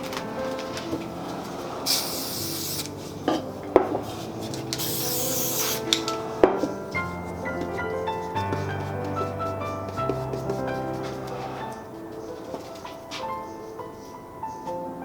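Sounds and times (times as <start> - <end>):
background music: 0.0 - 15.0
spray paint can hissing: 1.8 - 3.1, 4.1 - 6.3.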